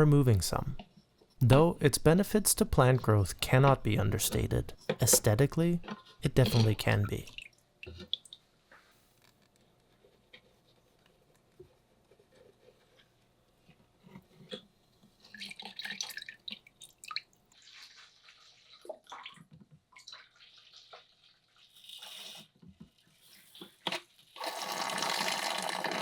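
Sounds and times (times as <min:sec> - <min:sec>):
small clicks and splashes: 0:07.3 - 0:11.6, 0:14.2 - 0:24.4
water sloshing and dripping: 0:15.2 - 0:21.8
water pouring: 0:15.3 - 0:22.4, 0:24.4 - 0:26.0.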